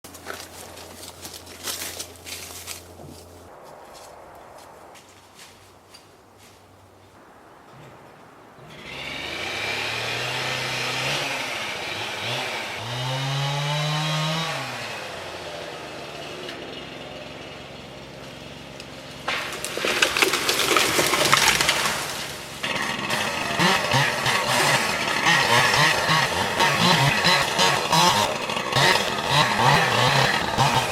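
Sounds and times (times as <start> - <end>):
chainsaw revving: 8.6 - 30.9.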